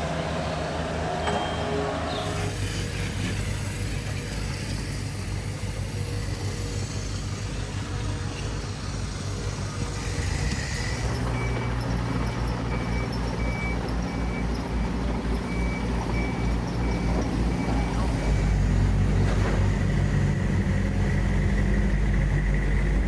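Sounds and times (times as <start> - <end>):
diesel engine of heavy machinery: 0.0 - 23.0
reversing alarm beeping: 9.8 - 18.7.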